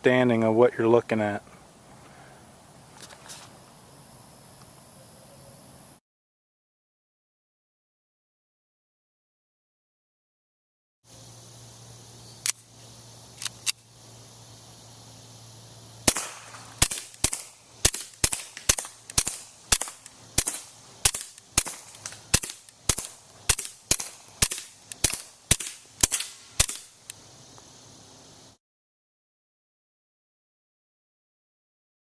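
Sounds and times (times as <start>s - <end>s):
suppressed gunshots: 16.0s - 26.9s.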